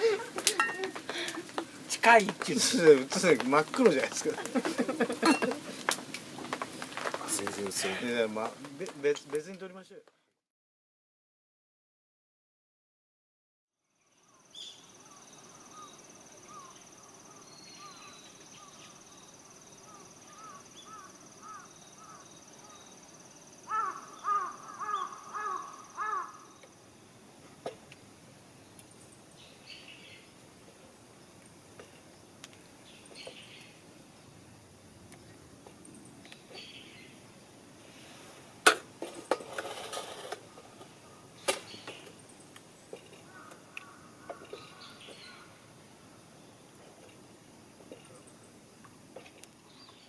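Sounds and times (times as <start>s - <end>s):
hard objects knocking: 0.3s - 7.8s
high insect trill: 14.0s - 27.4s
bird cawing: 15.0s - 18.7s, 19.9s - 22.8s, 23.7s - 26.6s, 43.1s - 45.6s
small ticks: 42.5s - 45.2s.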